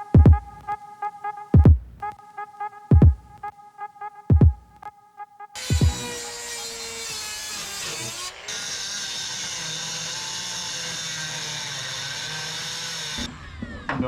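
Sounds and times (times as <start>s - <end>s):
music beat with bass drop: 0.1s - 0.7s, 1.6s - 2.2s, 2.9s - 3.4s, 4.3s - 4.8s, 5.7s - 6.1s
rotary tool high-pitched whine: 6.0s - 14.0s.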